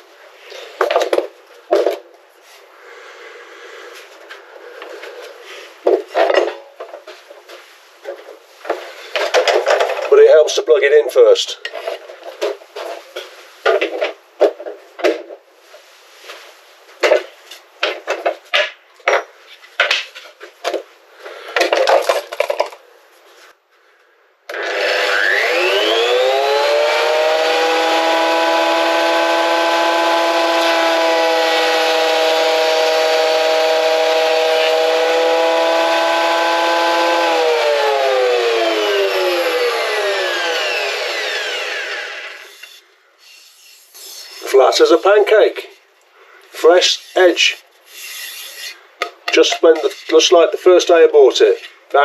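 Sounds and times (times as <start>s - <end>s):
thickness planer motor whine: 24.5s - 42.8s.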